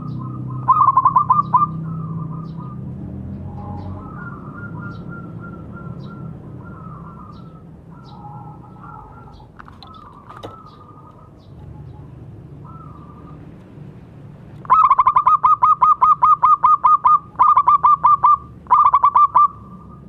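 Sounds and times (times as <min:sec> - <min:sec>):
dove cooing: 0:00.0 - 0:13.5, 0:14.6 - 0:20.0
small bird high chirps: 0:00.0 - 0:13.6.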